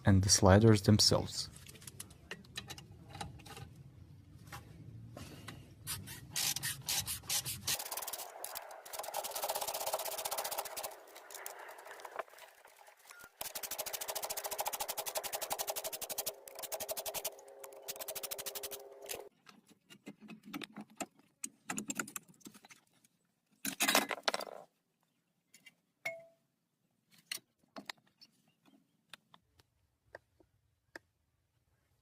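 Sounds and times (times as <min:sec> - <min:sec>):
power tool rattling: 0:06.4 - 0:12.2, 0:13.4 - 0:19.3.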